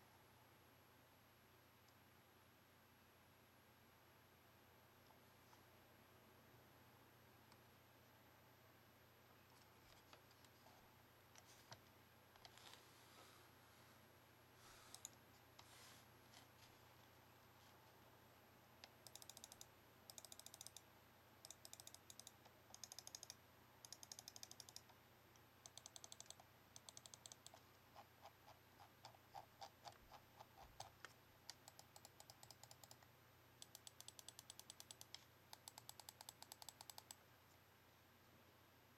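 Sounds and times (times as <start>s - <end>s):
mouse buttons clicking: 14.9s - 15.2s, 18.8s - 20.8s, 21.4s - 24.9s, 33.6s - 37.2s.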